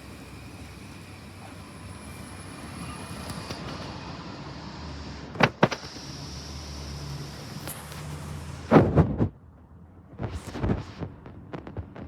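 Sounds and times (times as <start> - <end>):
electric train rumbling: 0.0 - 8.7.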